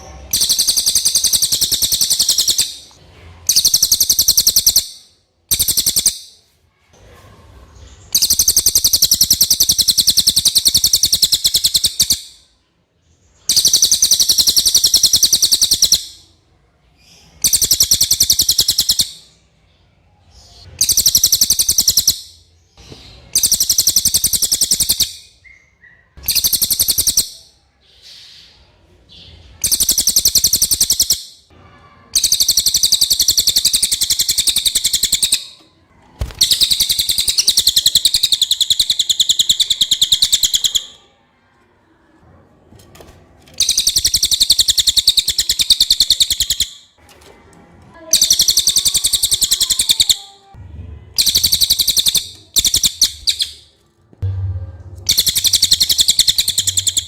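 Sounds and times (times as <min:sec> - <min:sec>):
songbird high-pitched trill: 0:00.3 - 0:02.8, 0:32.2 - 0:35.6, 0:55.1 - 0:57.0.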